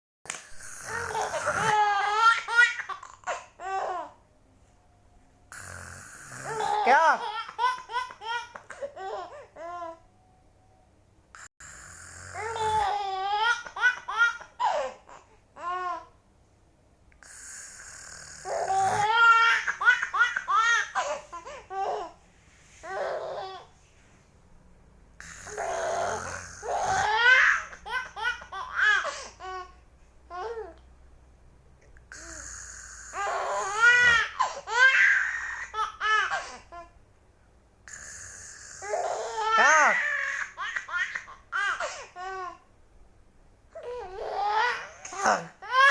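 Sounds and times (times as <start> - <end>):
baby giggling: 0.9 - 4.1
baby laughing: 0.9 - 4.1, 6.4 - 9.8, 18.5 - 22.1.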